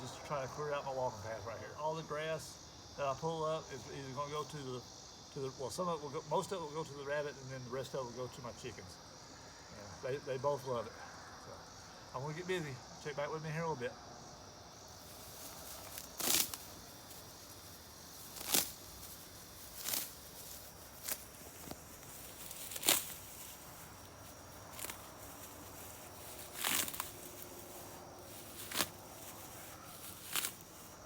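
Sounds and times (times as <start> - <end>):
insects chirring: 0.0 - 31.0
grass pulled up by hand: 15.0 - 31.0.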